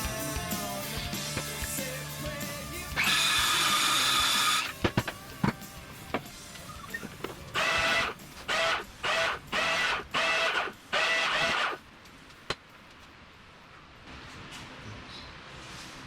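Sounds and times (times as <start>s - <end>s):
small motor whining: 3.0s - 4.7s, 6.7s - 11.8s.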